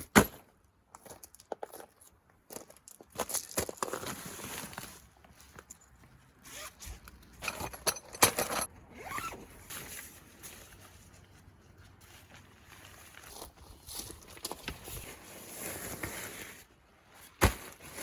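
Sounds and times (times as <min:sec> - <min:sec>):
zipper being pulled: 0:09.0 - 0:09.4.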